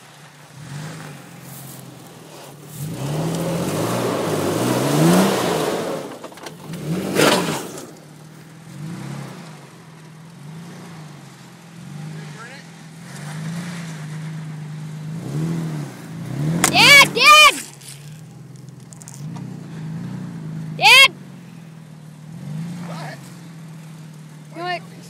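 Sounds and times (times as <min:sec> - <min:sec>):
off-road engine revving: 0:00.0 - 0:25.0
rushing tyre noise: 0:00.0 - 0:25.0.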